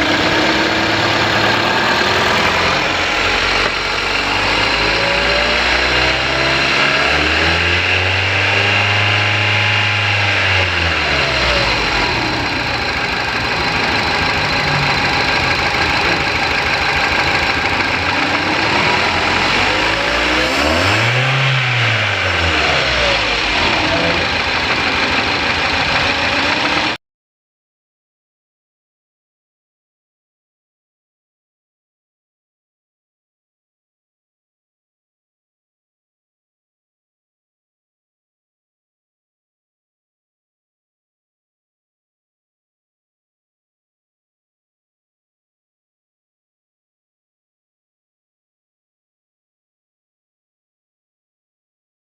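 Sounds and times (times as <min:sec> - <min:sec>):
misfiring engine revving: 0:00.0 - 0:27.0.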